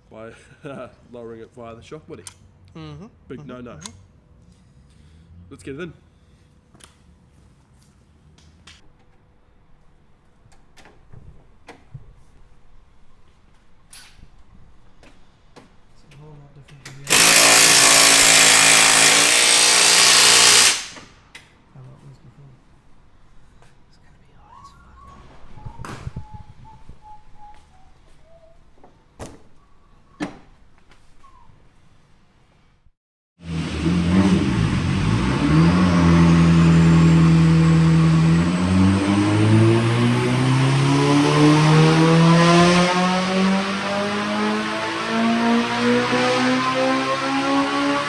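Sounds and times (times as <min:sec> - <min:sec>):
power tool running: 0:17.1 - 0:21.2, 0:33.4 - 0:48.0
car engine revving under load: 0:33.4 - 0:48.0
thin rising whine: 0:33.4 - 0:48.0.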